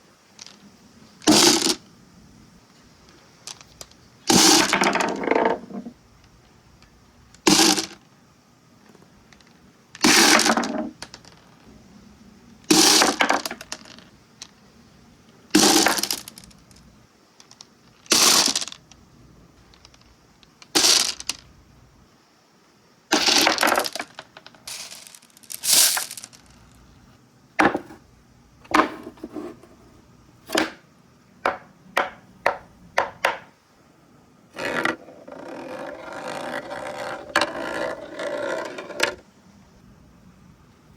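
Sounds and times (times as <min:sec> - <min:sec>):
marbles clattering down marble run: 0:07.5 - 0:08.0, 0:10.1 - 0:11.4, 0:12.7 - 0:14.0, 0:15.6 - 0:16.5, 0:17.5 - 0:18.8, 0:20.8 - 0:21.4, 0:23.2 - 0:26.6, 0:34.6 - 0:39.2.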